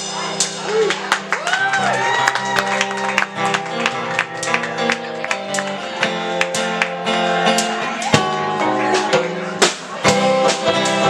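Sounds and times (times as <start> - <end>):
folk band playing instrumental: 0.0 - 11.0
strummed acoustic guitar: 3.1 - 11.0.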